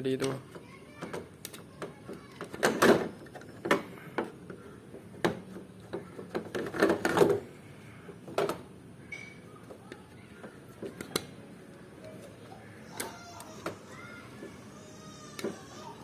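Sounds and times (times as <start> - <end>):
hard parts clicking and knocking: 0.2 - 7.5.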